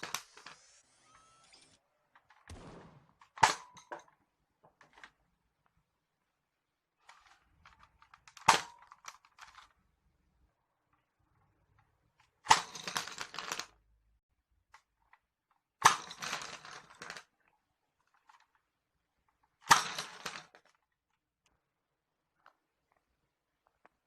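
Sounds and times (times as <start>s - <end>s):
sharp cracks: 2.5s - 3.8s.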